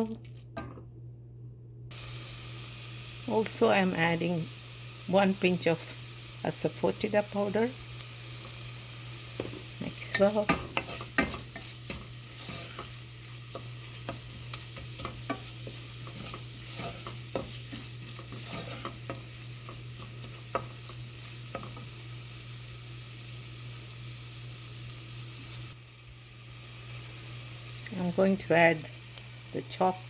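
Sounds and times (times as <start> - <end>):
curry sizzling in a pan: 1.9 - 30.0
utensil scraping a pan: 9.4 - 21.0.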